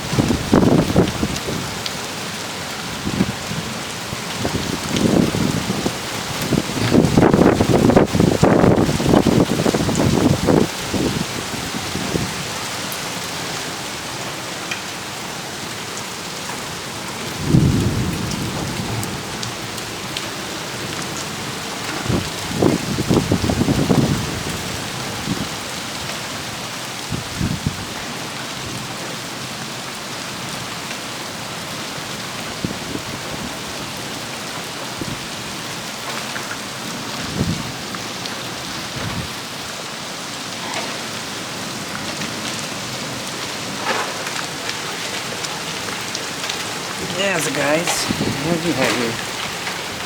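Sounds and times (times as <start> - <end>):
heavy rain pouring: 0.0 - 50.0.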